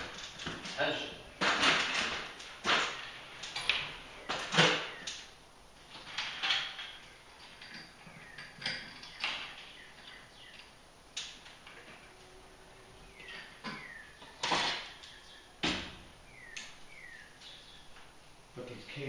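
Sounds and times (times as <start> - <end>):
metallic clicks and clanks of tools: 5.9 - 11.8.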